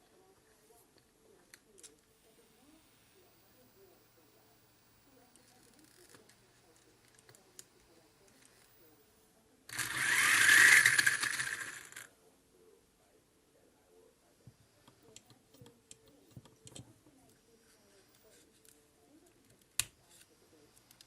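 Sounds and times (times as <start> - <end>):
small electric motor whirring: 2.1 - 9.1, 9.7 - 12.1.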